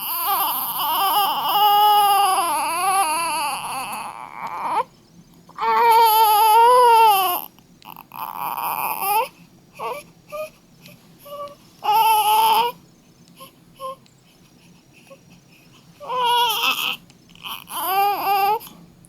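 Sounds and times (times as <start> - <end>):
baby crying: 0.0 - 4.9, 5.6 - 10.6, 11.2 - 12.8, 13.4 - 14.0, 16.0 - 18.8
baby whimpering: 0.0 - 4.9, 5.6 - 12.8, 13.4 - 18.8.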